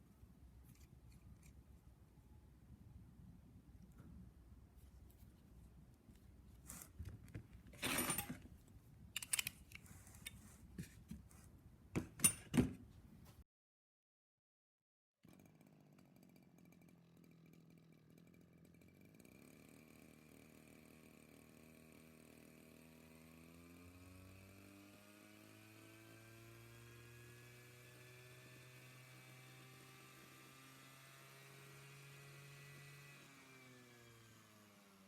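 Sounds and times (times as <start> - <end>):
metal tools clicking and rattling: 7.8 - 8.4, 9.2 - 10.4, 12.1 - 12.6.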